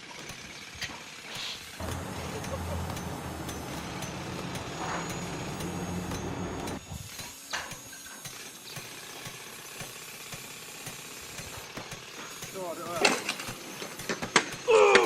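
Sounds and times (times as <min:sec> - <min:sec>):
engine running: 0:01.7 - 0:06.8.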